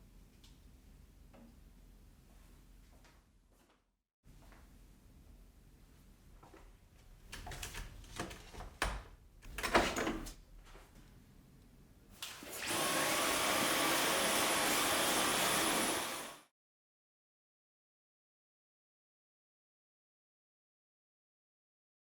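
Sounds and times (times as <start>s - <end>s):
vacuum cleaner whining: 12.4s - 16.5s.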